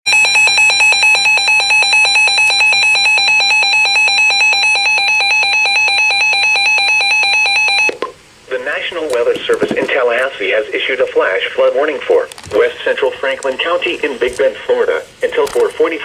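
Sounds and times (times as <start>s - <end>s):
rapid electronic alarm beeping: 0.1s - 7.9s.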